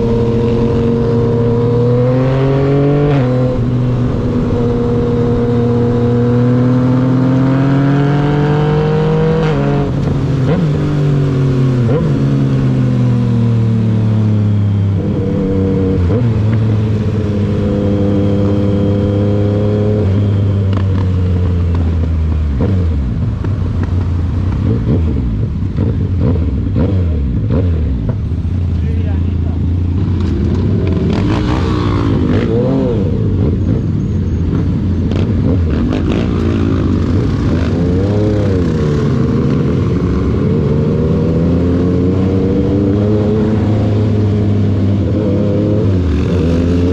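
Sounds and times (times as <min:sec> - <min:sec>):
motorcycle engine shifting gears: 0:00.0 - 0:28.8.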